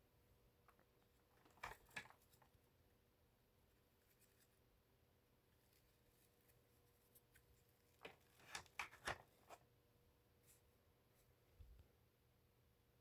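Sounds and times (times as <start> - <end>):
faint clicks and rustles: 0.6 - 2.8, 5.5 - 9.7.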